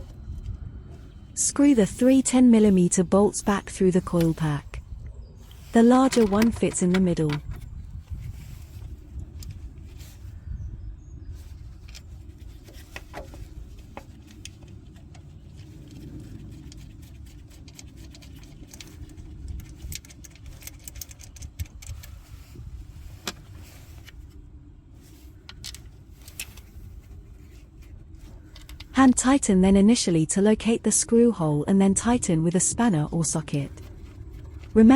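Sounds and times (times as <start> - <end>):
low steady rumble: 0.0 - 34.9
small metallic clicks and taps: 17.7 - 22.2.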